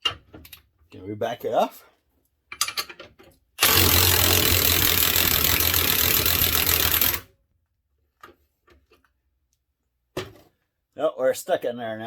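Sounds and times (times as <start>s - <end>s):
impact wrench hammering: 3.6s - 7.2s.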